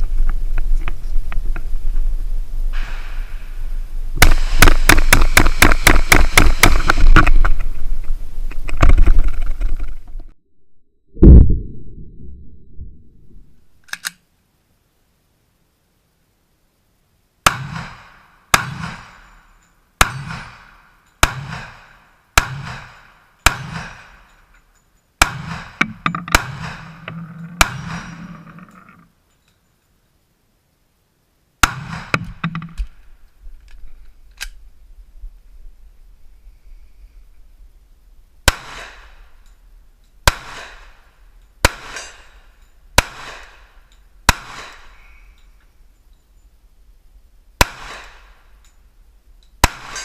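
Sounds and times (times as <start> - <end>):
pistol shots with ringing echo: 20.0 - 24.2, 25.2 - 28.4, 38.4 - 39.3, 40.2 - 41.0, 41.6 - 42.4, 43.0 - 43.7, 44.3 - 45.0, 47.6 - 48.4, 49.6 - 50.0.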